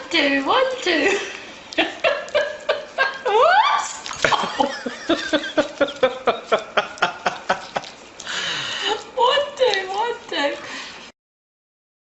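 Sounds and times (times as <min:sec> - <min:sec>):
person laughing: 0:04.2 - 0:07.9.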